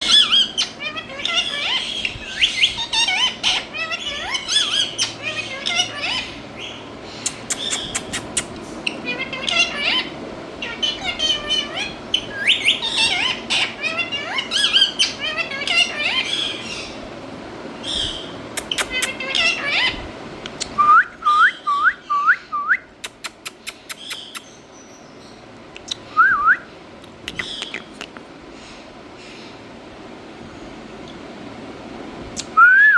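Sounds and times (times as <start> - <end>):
parrot chattering and whistling: 0.0 - 17.0, 17.9 - 24.6
parrot clicks: 18.6 - 19.2, 23.0 - 24.4, 25.7 - 26.0.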